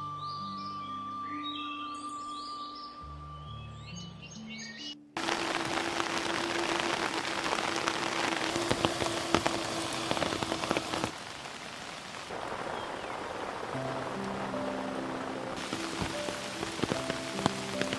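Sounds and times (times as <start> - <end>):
rain falling: 5.2 - 17.9
raindrops hitting close by: 5.2 - 17.9.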